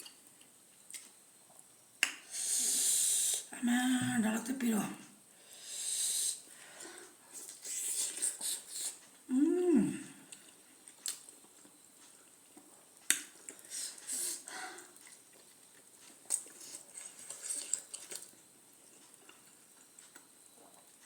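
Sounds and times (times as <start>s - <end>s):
eating sounds: 9.8s - 21.0s.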